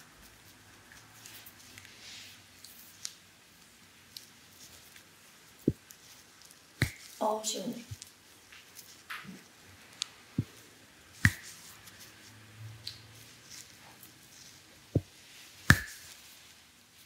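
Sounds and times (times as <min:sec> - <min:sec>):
hands massaging body: 0:04.0 - 0:07.3, 0:07.9 - 0:16.6
sharp clicks or pops: 0:06.8 - 0:07.2, 0:15.7 - 0:16.0.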